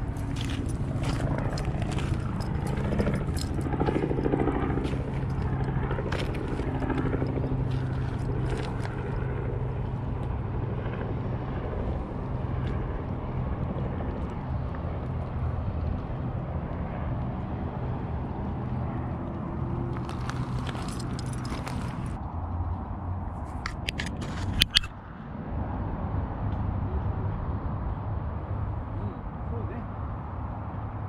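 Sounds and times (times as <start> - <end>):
low drone of engines: 0.0 - 31.0
sharp clicks and knocks: 23.6 - 24.9.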